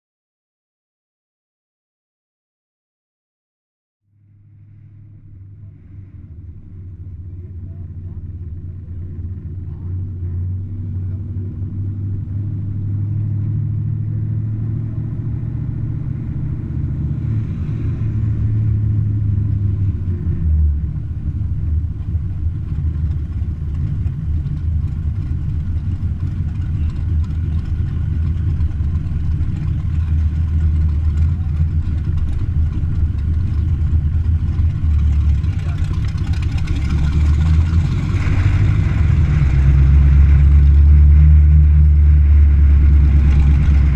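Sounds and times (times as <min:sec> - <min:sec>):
car engine low rumble: 0:04.1 - 0:43.9.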